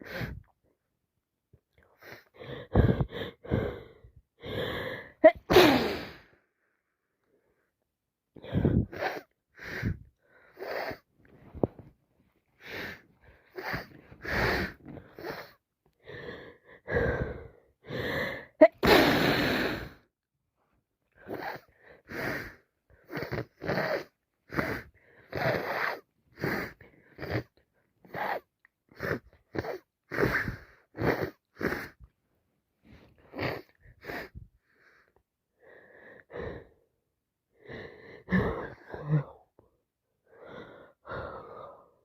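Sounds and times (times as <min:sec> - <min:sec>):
wheezy gasps: 0:01.8 - 0:06.4, 0:08.4 - 0:11.9, 0:12.5 - 0:20.1, 0:21.2 - 0:32.1, 0:32.8 - 0:36.9, 0:37.6 - 0:39.5, 0:40.2 - 0:42.0
person sneezing: 0:05.2 - 0:06.3, 0:18.6 - 0:19.8.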